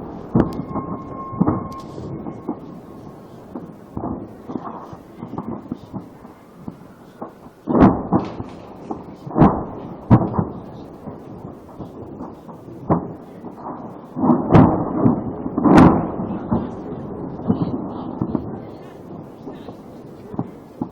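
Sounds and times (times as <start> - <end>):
heavy explosion booms echoing: 0.0 - 20.9.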